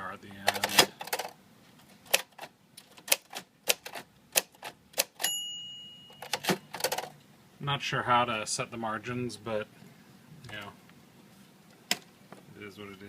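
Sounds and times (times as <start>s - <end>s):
typewriter bell ding: 5.2s - 6.8s
typewriter key strikes: 6.1s - 7.1s.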